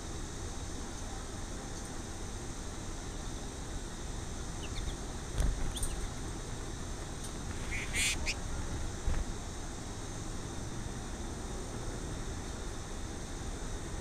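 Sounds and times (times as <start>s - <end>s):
steady hiss: 0.0s - 14.0s
bird chirps: 4.6s - 5.0s, 5.7s - 6.1s, 7.6s - 8.4s
harsh raspy bird call: 7.6s - 8.4s.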